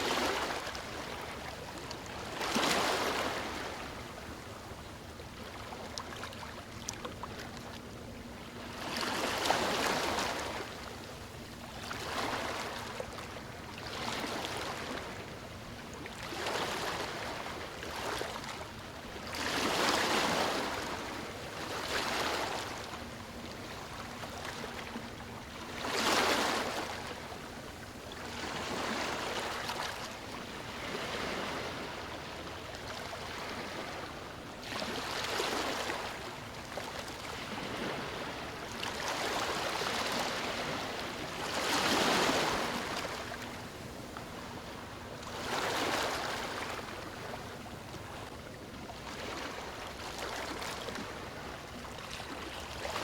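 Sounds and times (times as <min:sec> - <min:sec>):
sea waves breaking on beach: 0:02.2 - 0:04.0, 0:19.2 - 0:22.9, 0:25.7 - 0:27.2, 0:28.3 - 0:32.5, 0:33.1 - 0:36.6, 0:37.2 - 0:48.3.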